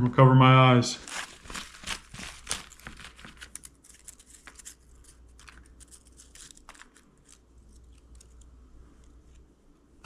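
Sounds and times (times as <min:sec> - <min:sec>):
paper slips rustling: 0:01.0 - 0:08.4.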